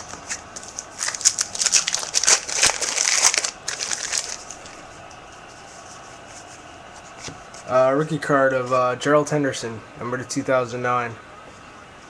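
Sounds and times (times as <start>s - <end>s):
plastic wrapper crinkling: 0.0s - 4.8s.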